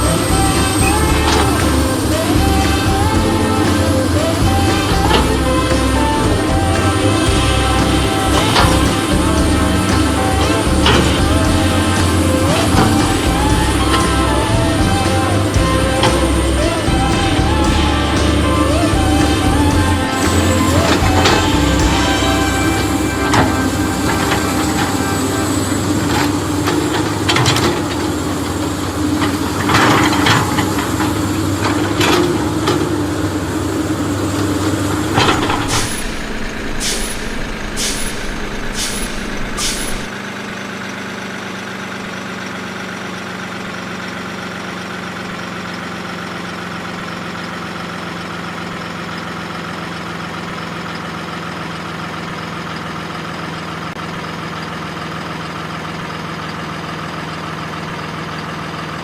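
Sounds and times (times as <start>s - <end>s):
heavy truck engine running: 0.0s - 59.0s
short air hisses: 36.6s - 40.1s.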